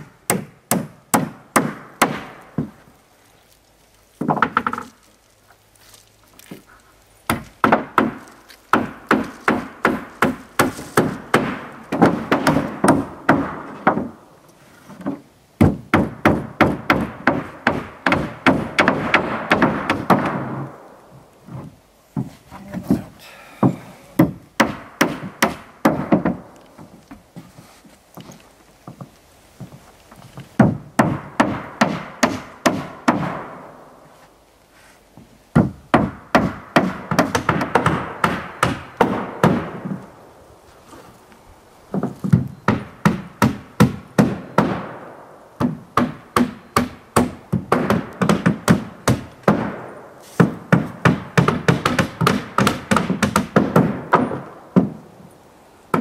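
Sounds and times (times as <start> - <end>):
hammer driving nails into wood: 7.3 - 14.2, 15.0 - 20.6, 50.4 - 55.0.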